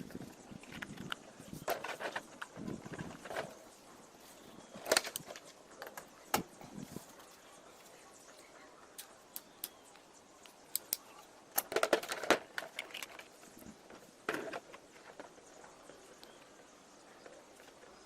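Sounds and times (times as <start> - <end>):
sharp clicks and rattles of parts: 0.0 - 3.7, 4.8 - 6.6, 10.7 - 15.4.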